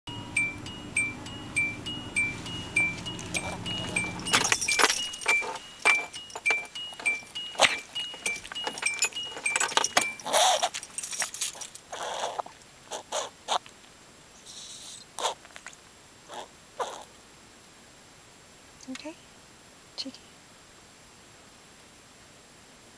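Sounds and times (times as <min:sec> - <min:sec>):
two-note electronic beep: 0:00.1 - 0:10.6
metallic clicks and rattles: 0:01.2 - 0:11.9
dog breathing raspily: 0:03.1 - 0:11.1.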